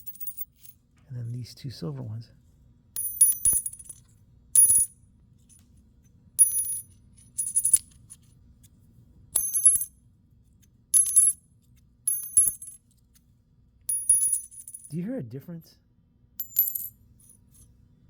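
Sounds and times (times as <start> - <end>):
coins clinking: 0.0 - 0.7, 6.4 - 8.0, 13.9 - 14.9, 16.4 - 17.6.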